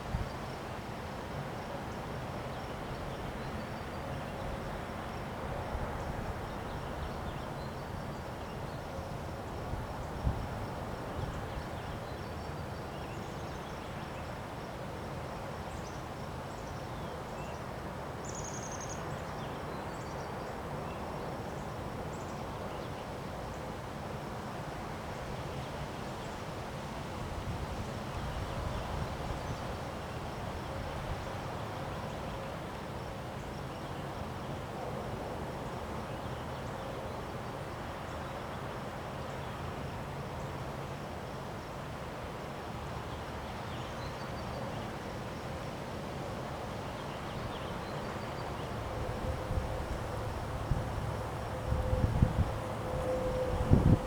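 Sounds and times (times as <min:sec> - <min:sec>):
wind rumble on microphone: 0:09.4 - 0:12.1, 0:48.2 - 0:54.0
wind blowing: 0:48.8 - 0:54.0.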